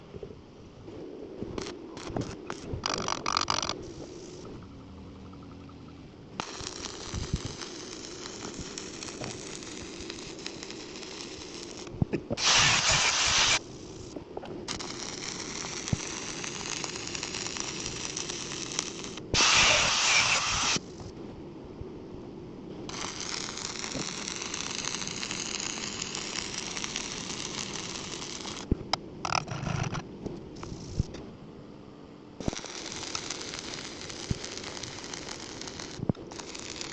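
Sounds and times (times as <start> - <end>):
welding arc crackling and hissing: 1.4 - 4.7, 6.4 - 21.2, 22.8 - 30.0, 30.6 - 31.2, 32.4 - 36.9
burst of noise: 12.3 - 18.0, 19.2 - 21.0.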